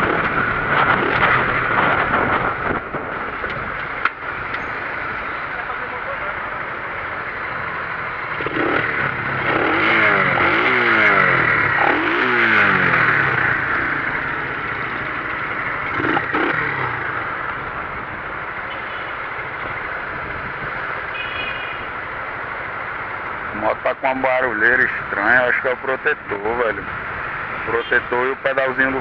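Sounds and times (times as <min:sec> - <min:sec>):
motorcycle engine revving: 0:00.0 - 0:05.2, 0:07.0 - 0:18.7
wind and road noise: 0:00.0 - 0:29.0.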